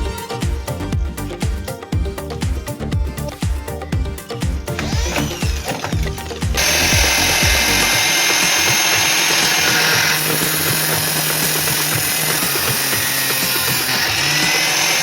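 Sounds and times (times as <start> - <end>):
power tool whining: 4.2 - 15.0.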